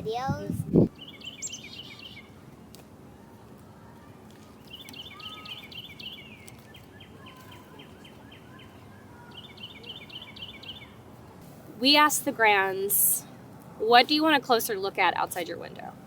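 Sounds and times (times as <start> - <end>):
bird chips: 4.3 - 10.9
light background hiss: 9.5 - 16.0.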